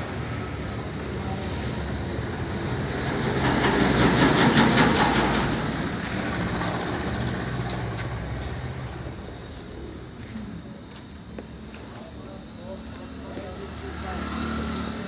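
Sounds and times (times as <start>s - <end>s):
vehicle passing by: 13.6s - 15.0s.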